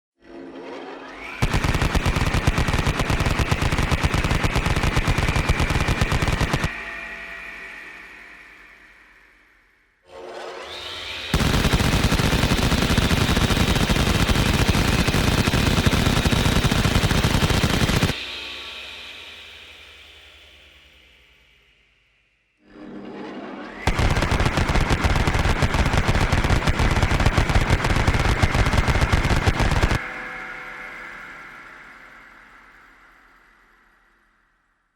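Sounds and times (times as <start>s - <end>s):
high whine: 1.2s - 9.7s, 11.0s - 21.8s, 22.6s - 33.6s
rotary machine gun firing: 1.4s - 6.8s, 11.3s - 18.2s, 23.9s - 30.0s.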